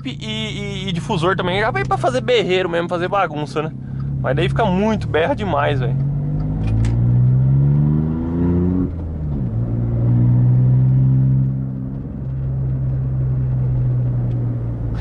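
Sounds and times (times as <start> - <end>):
car engine revving: 0.0 - 15.0.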